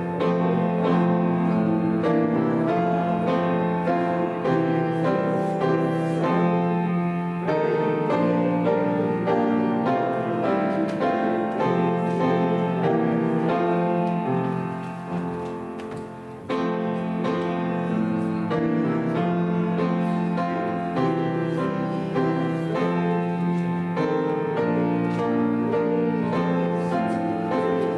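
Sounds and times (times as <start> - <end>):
piano playing slow chords: 0.0 - 27.9.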